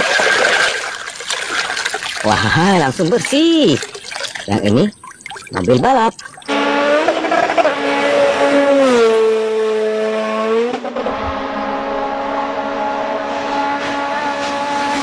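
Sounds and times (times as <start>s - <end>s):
racing car engine: 6.5s - 15.0s.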